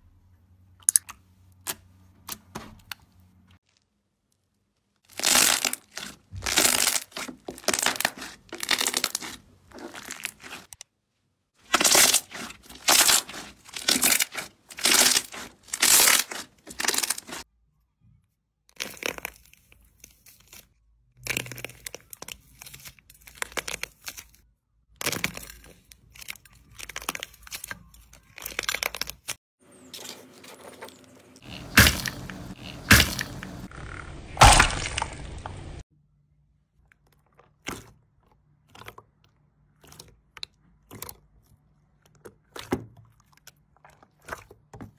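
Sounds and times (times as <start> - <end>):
slime crackling and popping: 5.0 - 10.7, 11.7 - 17.4, 34.4 - 35.6.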